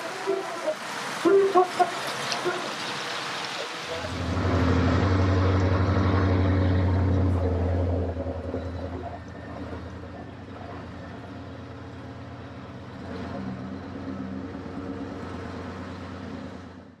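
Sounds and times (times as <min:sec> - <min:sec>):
heavy vehicle engine running: 0:03.9 - 0:17.0.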